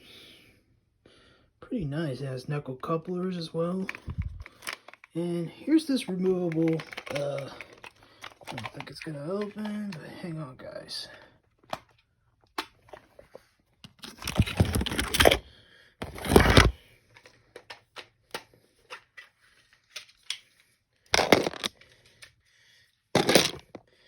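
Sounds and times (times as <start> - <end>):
plastic scraping and rustling: 3.8 - 10.3, 12.8 - 15.4, 16.0 - 17.8, 21.2 - 21.8, 23.2 - 23.8
small plastic clicks: 3.9 - 5.2, 6.1 - 10.0.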